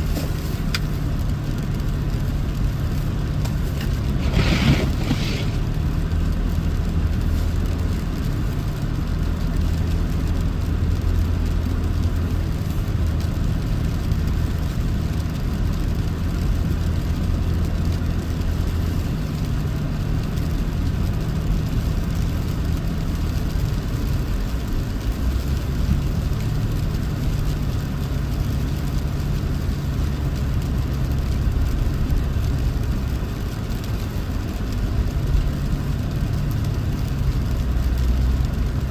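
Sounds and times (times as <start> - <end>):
tyre and road noise: 0.0 - 38.9.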